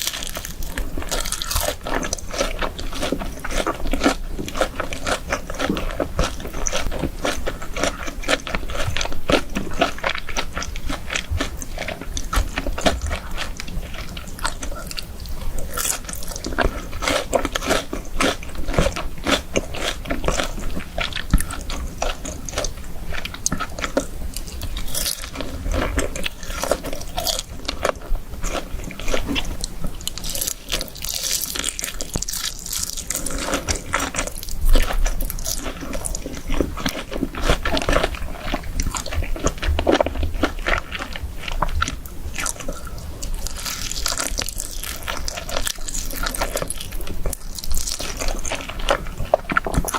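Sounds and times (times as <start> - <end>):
crunchy chewing: 0.0 - 49.9.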